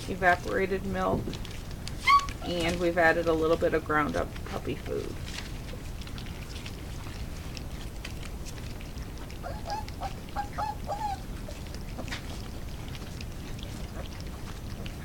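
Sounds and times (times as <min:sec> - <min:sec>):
puppies lapping wet food: 0:00.0 - 0:15.0
puppy whimpering: 0:01.5 - 0:02.9, 0:08.5 - 0:15.0.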